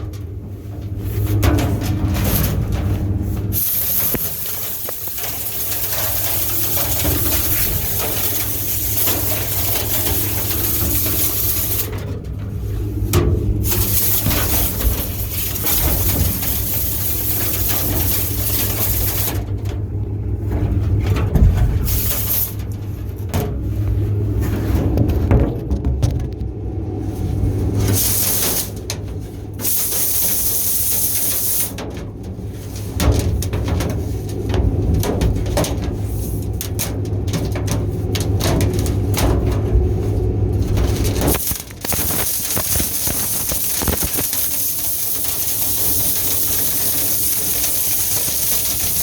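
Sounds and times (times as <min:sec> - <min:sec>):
hiss of rushing air: 0:03.2 - 0:12.0, 0:12.6 - 0:19.5, 0:21.7 - 0:22.8, 0:27.3 - 0:31.8, 0:40.9 - 0:49.0
low rumble: 0:06.6 - 0:28.1.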